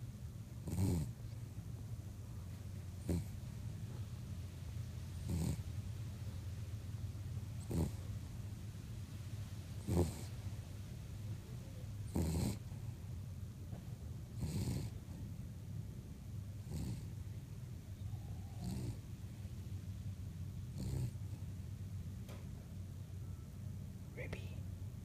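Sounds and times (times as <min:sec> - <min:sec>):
dog snoring: 0:00.6 - 0:01.4, 0:03.0 - 0:04.0, 0:05.2 - 0:05.9, 0:07.6 - 0:08.3, 0:09.8 - 0:10.6, 0:11.5 - 0:12.9, 0:14.3 - 0:15.3, 0:16.6 - 0:17.2, 0:18.1 - 0:19.1, 0:20.7 - 0:21.6.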